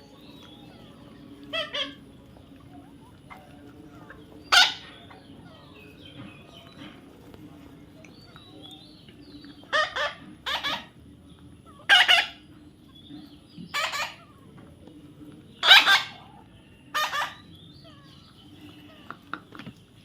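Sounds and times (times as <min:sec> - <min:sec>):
parrot squawking: 0:00.0 - 0:02.0, 0:02.8 - 0:06.2, 0:09.6 - 0:11.0, 0:11.7 - 0:12.4, 0:13.7 - 0:14.4, 0:15.6 - 0:16.3, 0:16.9 - 0:18.3.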